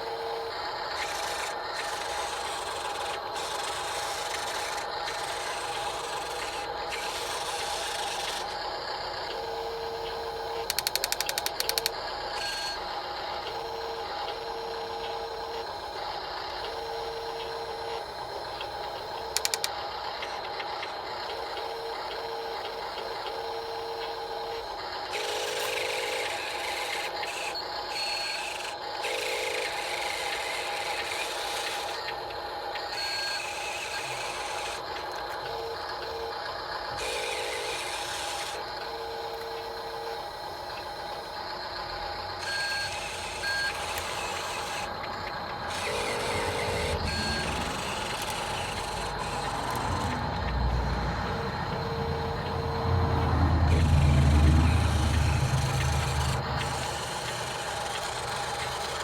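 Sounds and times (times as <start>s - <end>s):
steady hum: 42.3s - 59.0s.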